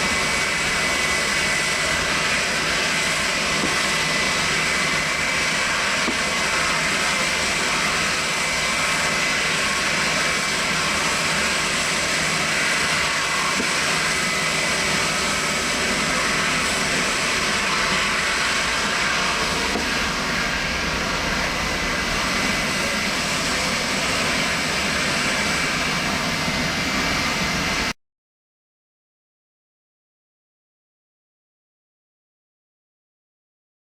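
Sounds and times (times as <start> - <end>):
jet engines roaring: 0.0 - 28.0.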